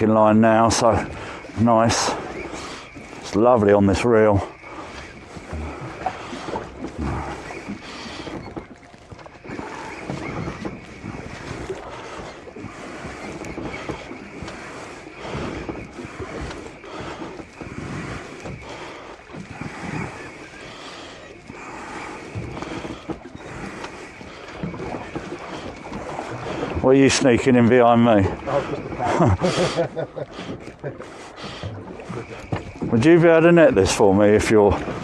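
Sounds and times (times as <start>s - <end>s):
water against boat hull: 0.0s - 35.0s
wind buffeting microphone: 0.0s - 35.0s.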